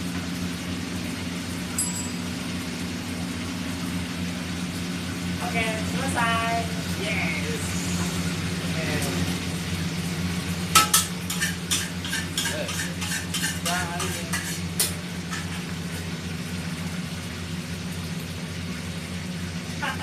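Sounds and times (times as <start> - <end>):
food frying: 0.0 - 20.0
metal spatula scraping a pan: 10.8 - 16.0.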